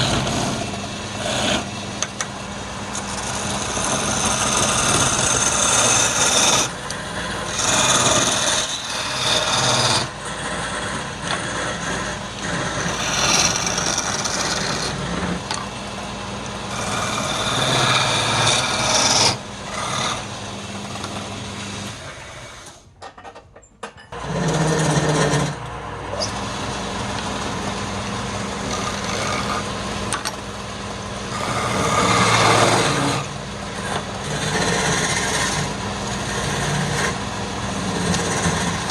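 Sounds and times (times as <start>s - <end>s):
wood lathe motor hum: 0.0s - 22.9s, 24.2s - 38.9s
tool scraping spinning wood: 0.0s - 23.2s, 24.1s - 38.9s.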